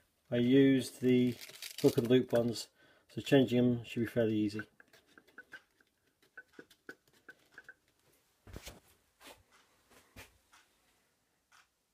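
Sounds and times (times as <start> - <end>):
faint handling ticks and knocks: 4.5 - 11.7.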